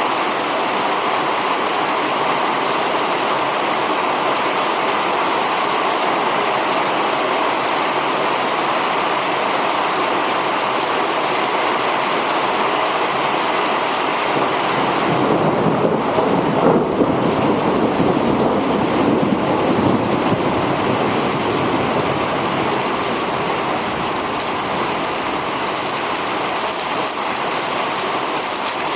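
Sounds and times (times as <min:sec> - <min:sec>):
torrential rain pouring: 0:00.0 - 0:28.9
low rumble of thunder: 0:14.3 - 0:27.0.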